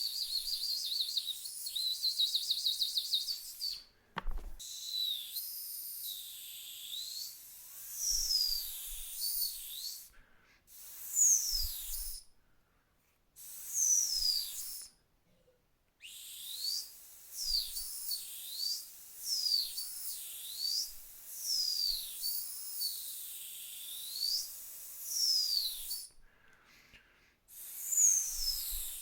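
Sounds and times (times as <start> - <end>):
dog whistle short high whistles: 0.0 - 3.9, 4.6 - 10.1, 10.8 - 12.2, 13.4 - 15.0, 16.0 - 26.2, 27.6 - 29.0
faint hiss: 0.0 - 12.4, 13.3 - 15.0, 16.0 - 29.0.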